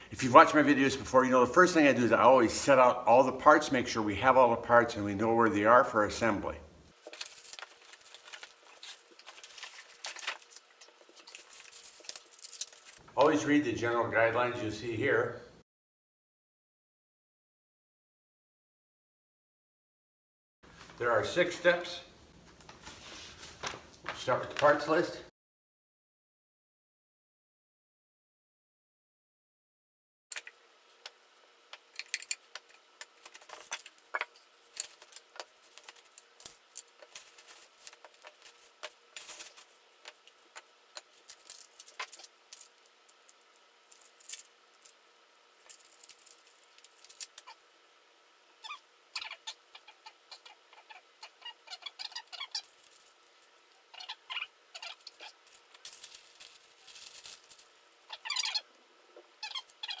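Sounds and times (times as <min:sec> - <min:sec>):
squeaky packaging rustling: 0:06.9 - 0:13.0, 0:22.6 - 0:25.1, 0:31.8 - 0:47.7, 0:48.6 - 0:58.7, 0:59.4 - 1:00.0
faint steady hum: 0:30.4 - 1:00.0.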